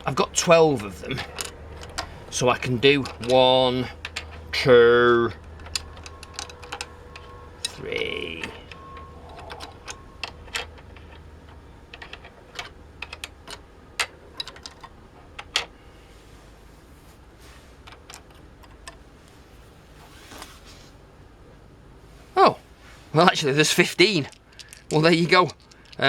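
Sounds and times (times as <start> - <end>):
plastic knobs clicking: 0.0 - 15.8, 17.8 - 19.1.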